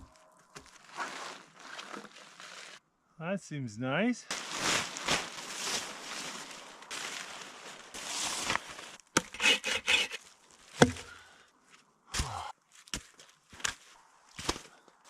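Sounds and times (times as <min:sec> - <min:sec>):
wood rubbing and scraping: 0:09.2 - 0:10.2
sharp wooden knocks: 0:10.8 - 0:11.1.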